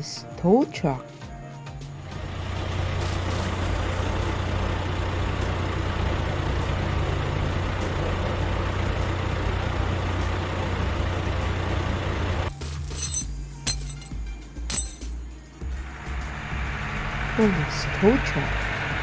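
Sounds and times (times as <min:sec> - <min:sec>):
heavy truck engine running: 0:01.2 - 0:13.6, 0:14.4 - 0:19.0.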